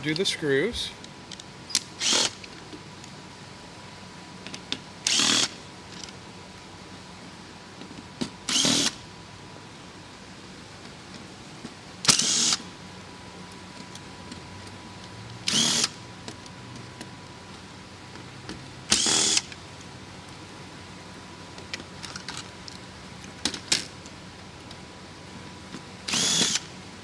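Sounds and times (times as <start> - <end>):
power screwdriver running: 1.8 - 2.4, 5.0 - 5.6, 8.5 - 9.0, 12.1 - 12.6, 15.5 - 16.0, 18.9 - 19.5, 26.1 - 26.7.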